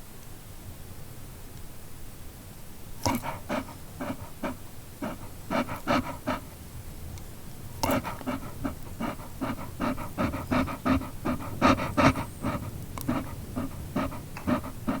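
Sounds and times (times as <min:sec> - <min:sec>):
dog panting: 0:03.0 - 0:06.8, 0:07.6 - 0:15.0.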